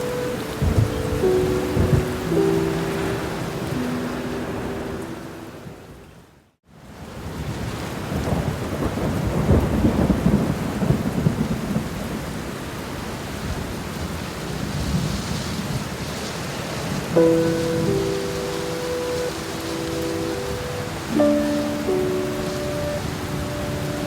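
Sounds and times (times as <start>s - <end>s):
rolling thunder: 0.0s - 3.8s, 8.0s - 12.3s
soft sustained musical notes: 0.0s - 6.1s, 17.1s - 24.0s
heavy rain: 0.0s - 24.0s.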